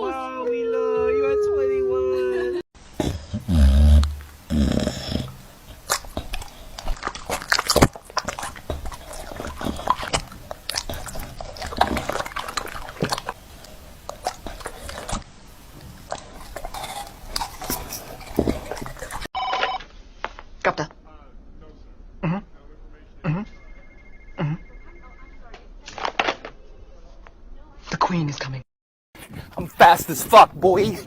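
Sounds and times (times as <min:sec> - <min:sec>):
dog chewing and crunching: 0:03.0 - 0:19.3.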